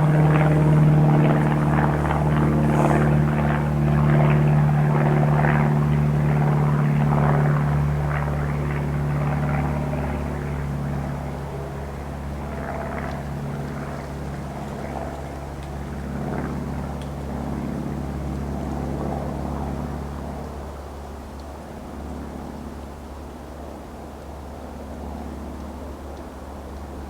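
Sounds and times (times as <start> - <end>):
aircraft engine drone: 0.0 - 18.0.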